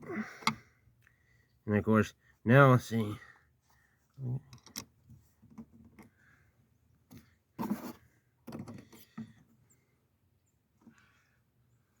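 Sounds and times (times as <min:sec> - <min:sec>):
tools clicking and knocking: 0:04.5 - 0:04.9.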